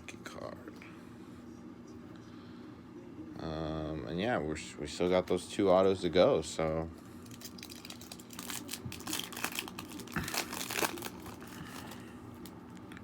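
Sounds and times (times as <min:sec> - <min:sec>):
foil wrapper crinkling: 0:07.2 - 0:12.5.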